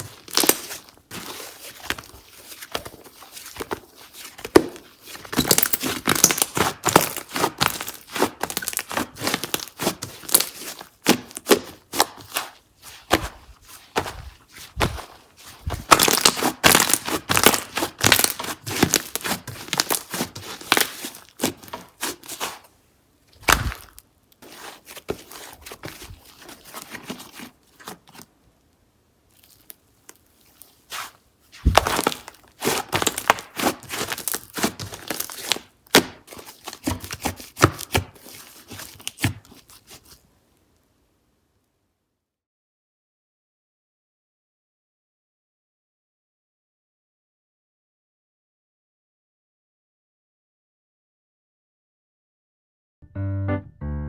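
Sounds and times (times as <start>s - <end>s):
slime squishing with crackling pops: 0.0s - 22.7s, 23.4s - 28.3s, 29.3s - 40.2s.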